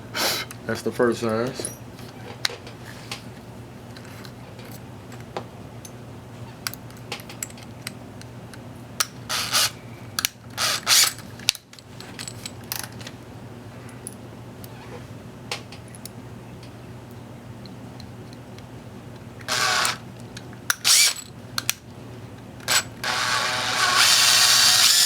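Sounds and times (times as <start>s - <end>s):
tool handling clicks: 17.6s - 21.8s
power drill drilling metal: 19.5s - 20.0s, 20.9s - 21.2s, 22.8s - 25.0s.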